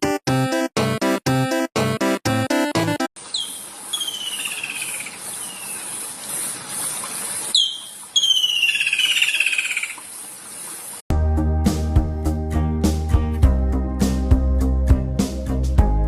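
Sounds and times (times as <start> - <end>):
songbird trilling: 3.3 - 6.0, 7.5 - 10.0.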